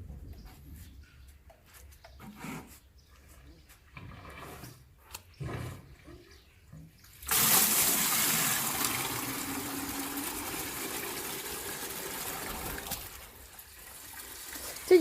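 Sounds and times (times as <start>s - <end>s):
water gushing from pipe: 7.2s - 15.0s.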